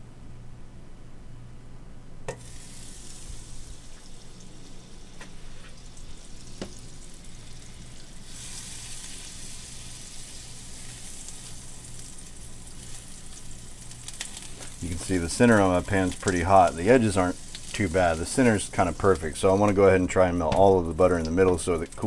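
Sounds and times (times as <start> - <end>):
food sizzling in a pan: 2.3 - 19.7.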